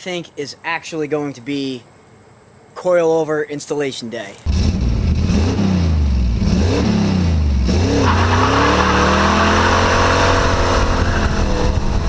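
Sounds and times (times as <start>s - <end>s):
car engine revving: 4.5s - 12.0s
hissing squeal like tyres: 8.0s - 11.8s.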